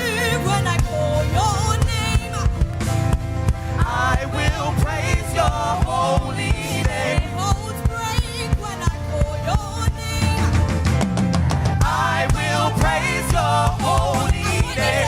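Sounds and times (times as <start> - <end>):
live band with drum beat: 0.0 - 15.0.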